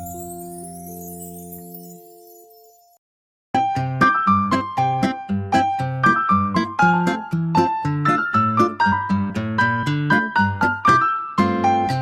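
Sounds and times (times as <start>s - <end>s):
light instrumental tune: 0.0s - 3.0s.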